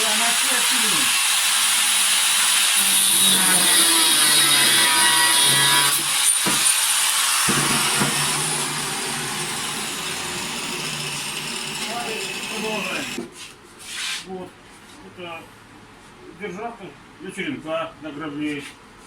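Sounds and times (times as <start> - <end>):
angle grinder cutting steel: 0.0 - 13.2.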